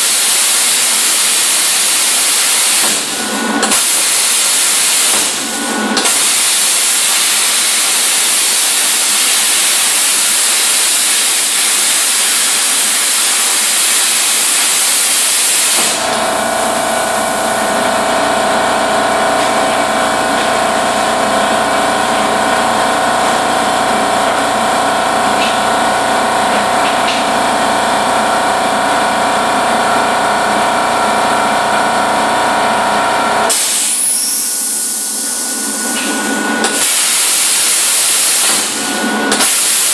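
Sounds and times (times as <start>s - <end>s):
plasma cutter hissing: 0.0s - 21.4s, 33.4s - 39.9s.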